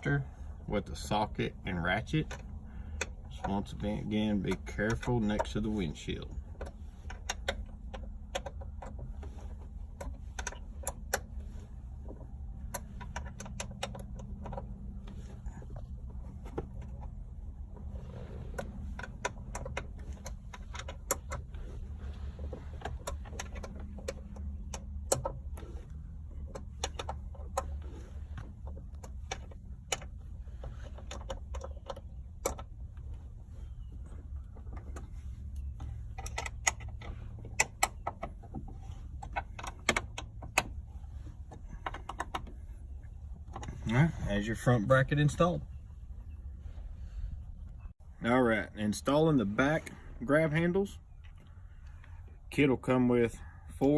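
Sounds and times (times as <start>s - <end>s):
steady low hum: 0.0s - 53.9s.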